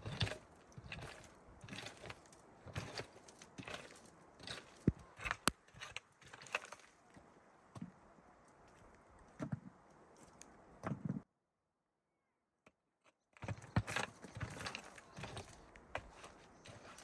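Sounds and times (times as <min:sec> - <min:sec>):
knocks and clatters of handling: 0:00.0 - 0:08.0, 0:13.4 - 0:17.0.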